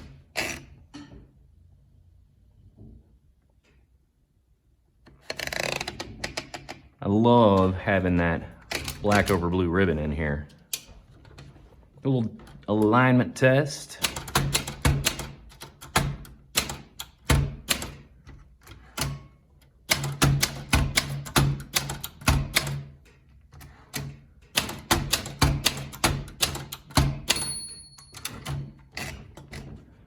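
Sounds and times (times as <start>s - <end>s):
typewriter typebar strikes: 19.9s - 22.9s, 23.9s - 29.6s
typewriter margin bell ding: 27.2s - 28.6s.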